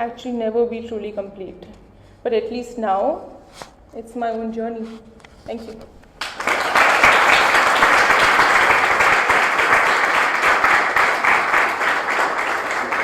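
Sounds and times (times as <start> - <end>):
audience applauding: 6.2 - 13.0.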